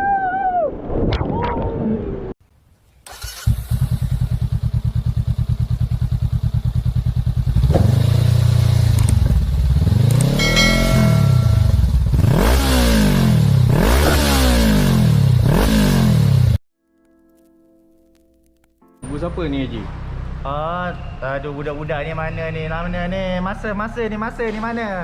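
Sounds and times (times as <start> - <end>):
motorcycle engine starting: 3.0 - 16.6
motorcycle engine revving: 3.1 - 16.6
motorcycle engine idling: 3.8 - 12.3.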